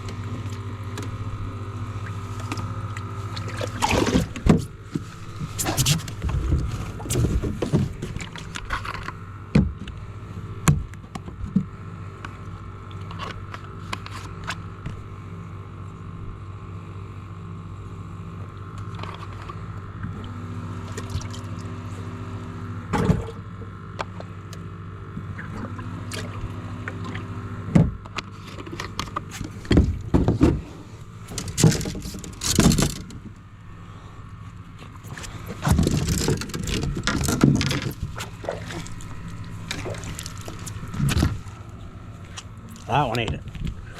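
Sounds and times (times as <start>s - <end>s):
boat motor humming: 0.0s - 43.9s
water lapping: 1.9s - 8.8s, 34.8s - 43.1s.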